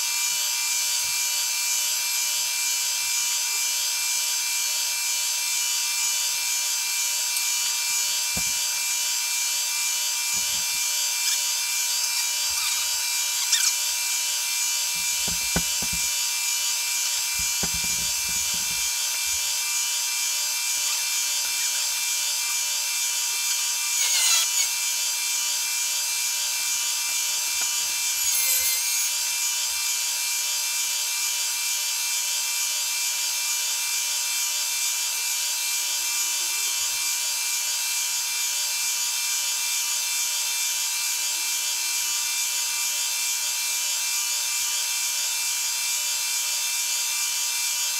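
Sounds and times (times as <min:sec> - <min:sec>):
milling machine motor whine: 0:05.6 - 0:22.1.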